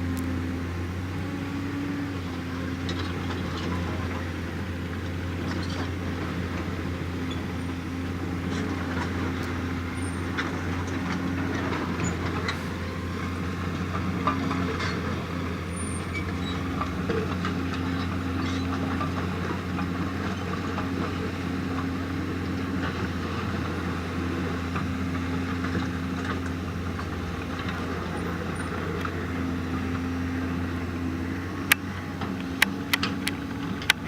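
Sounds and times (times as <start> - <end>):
diesel engine running: 0.0 - 34.0.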